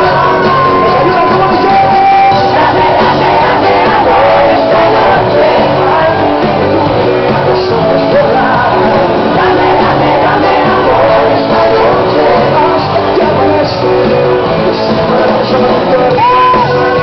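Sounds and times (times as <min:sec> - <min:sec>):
live band with singer: 0:00.0 - 0:17.0
people shouting: 0:02.3 - 0:06.4.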